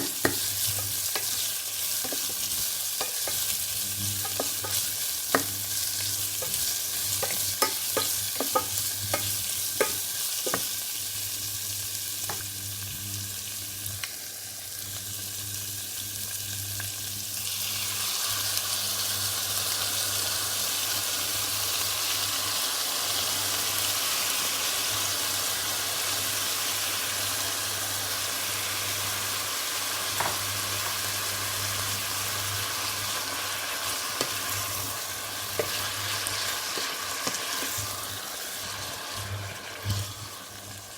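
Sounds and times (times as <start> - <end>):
food sizzling in a pan: 0.0 - 40.9
utensil knocking against pan: 4.2 - 5.6, 7.2 - 10.7.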